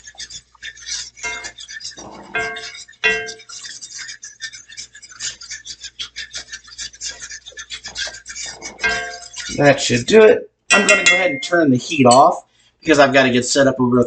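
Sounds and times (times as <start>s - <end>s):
fork whisking in a skillet: 0.0s - 13.4s
metal clinking on pan: 1.0s - 3.8s, 8.0s - 9.7s, 10.7s - 12.4s.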